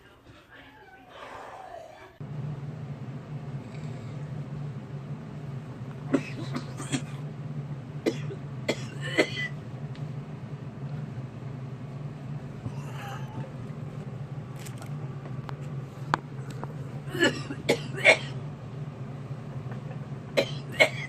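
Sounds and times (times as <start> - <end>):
steady low hum: 0.0 - 21.0
person coughing hard: 6.1 - 7.2, 8.0 - 9.6, 17.1 - 18.4, 20.4 - 21.0.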